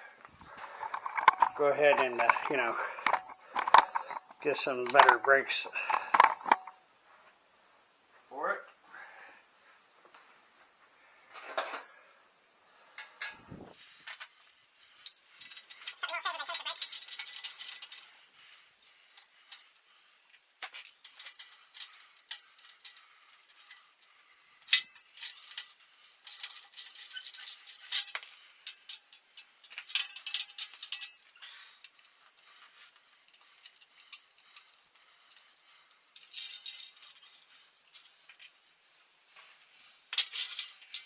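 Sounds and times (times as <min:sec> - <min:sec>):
metal tools clinking and rattling: 0:00.4 - 0:06.8, 0:14.8 - 0:18.2, 0:20.8 - 0:24.0, 0:24.6 - 0:35.4, 0:36.1 - 0:38.4, 0:40.1 - 0:41.0.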